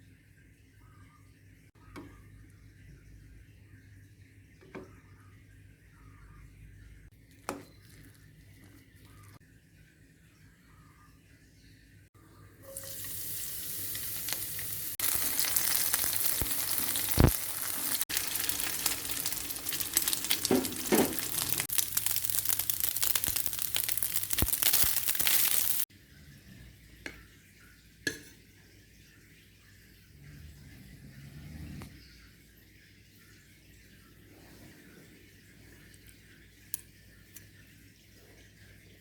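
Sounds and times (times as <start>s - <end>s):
food sizzling in hot oil: 12.6s - 25.9s.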